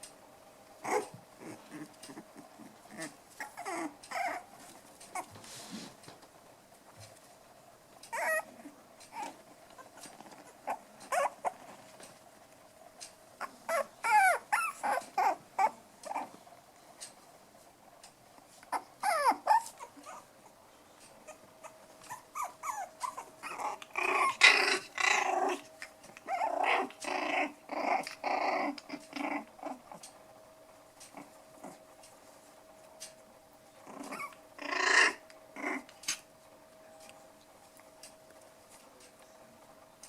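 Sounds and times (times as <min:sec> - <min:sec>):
puppies growling: 0:00.8 - 0:06.0, 0:08.1 - 0:12.7, 0:13.3 - 0:16.6, 0:18.3 - 0:20.6, 0:21.2 - 0:30.2, 0:30.8 - 0:32.4, 0:33.7 - 0:36.4.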